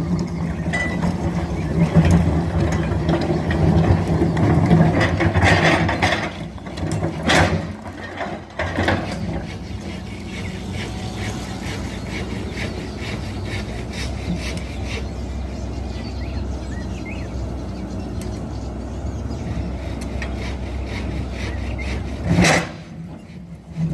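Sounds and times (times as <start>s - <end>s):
excavator engine running: 0.0s - 23.9s
scraping rasping strokes: 7.0s - 15.2s, 19.9s - 23.9s.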